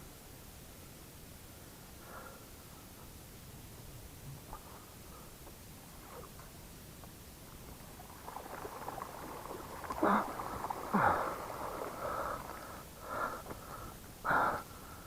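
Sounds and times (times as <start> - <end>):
person breathing hard: 10.0 - 15.0.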